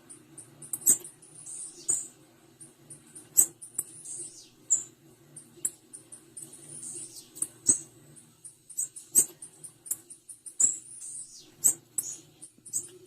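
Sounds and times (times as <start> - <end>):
bird high chirps: 1.4 - 2.1, 4.0 - 4.9.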